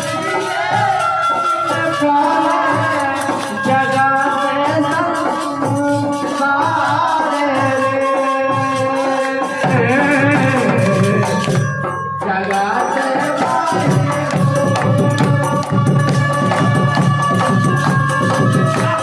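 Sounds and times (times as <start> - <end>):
drums: 0.0 - 19.0.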